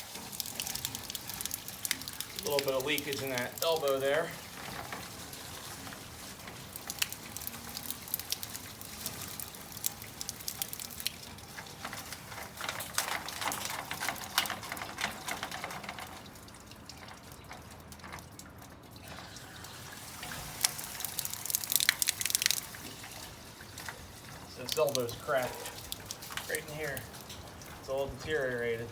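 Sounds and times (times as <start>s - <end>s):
water dripping from downspout: 0.0s - 28.9s
water splashing: 0.0s - 28.9s
water trickling: 0.0s - 28.9s.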